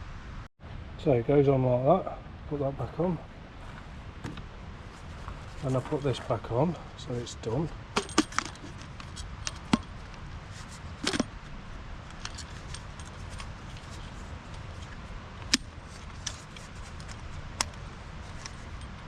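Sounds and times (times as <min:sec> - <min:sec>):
metallic tool clicks and clinks: 0:08.0 - 0:09.8.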